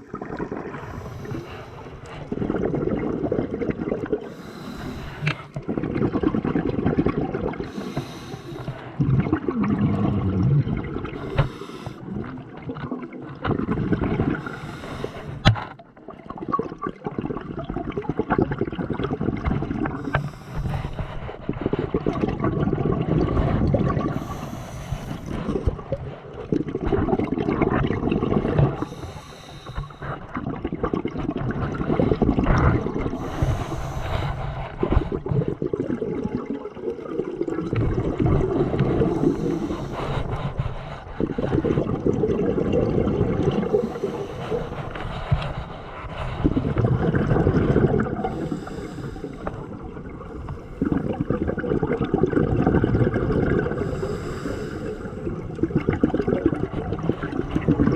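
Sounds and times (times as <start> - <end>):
exhaust bubbles rumbling underwater: 0.0 - 57.9
hissing breaths through regulator: 0.7 - 2.4, 4.2 - 5.6, 7.6 - 9.0, 11.1 - 12.1, 14.4 - 15.7, 20.0 - 22.2, 23.4 - 26.4, 28.7 - 30.3, 31.9 - 35.6, 38.6 - 42.3, 43.2 - 51.3, 53.6 - 55.6.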